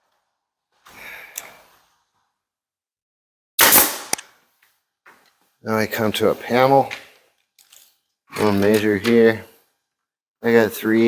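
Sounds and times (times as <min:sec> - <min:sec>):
nail gun firing: 0:03.6 - 0:04.3.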